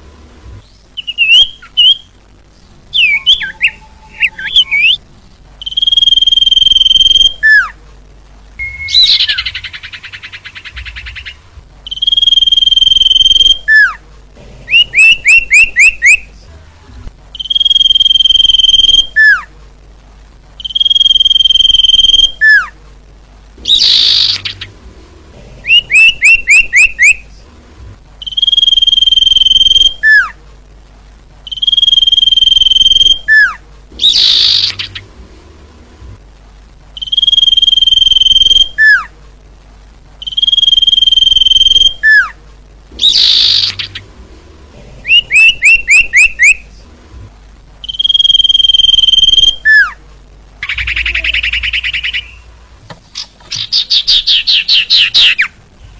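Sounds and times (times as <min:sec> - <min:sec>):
buzzy bird trill: 0:00.6 - 0:02.2, 0:02.8 - 0:07.8, 0:08.6 - 0:14.0, 0:14.7 - 0:16.3, 0:17.3 - 0:19.5, 0:20.6 - 0:22.7, 0:23.6 - 0:24.8, 0:25.6 - 0:27.3, 0:28.2 - 0:30.4, 0:31.4 - 0:35.2, 0:37.0 - 0:39.1, 0:40.2 - 0:42.4, 0:43.0 - 0:44.2, 0:45.0 - 0:46.6, 0:47.8 - 0:50.0, 0:50.6 - 0:52.5, 0:53.2 - 0:55.6
harsh bird calls: 0:00.6 - 0:07.8, 0:08.6 - 0:14.0, 0:14.7 - 0:16.3, 0:23.6 - 0:24.8, 0:25.6 - 0:27.3, 0:31.5 - 0:35.2, 0:40.2 - 0:44.2, 0:45.0 - 0:46.7, 0:50.6 - 0:52.5, 0:53.2 - 0:55.6
bird whistling: 0:01.0 - 0:02.1, 0:02.9 - 0:05.0, 0:05.6 - 0:07.7, 0:08.6 - 0:14.0, 0:14.7 - 0:16.2, 0:17.4 - 0:19.5, 0:20.6 - 0:22.7, 0:23.7 - 0:24.7, 0:25.7 - 0:27.2, 0:28.2 - 0:30.4, 0:31.5 - 0:35.0, 0:37.0 - 0:39.1, 0:40.2 - 0:42.4, 0:43.0 - 0:44.0, 0:45.1 - 0:46.6, 0:47.8 - 0:50.0, 0:50.6 - 0:52.4, 0:53.6 - 0:55.5.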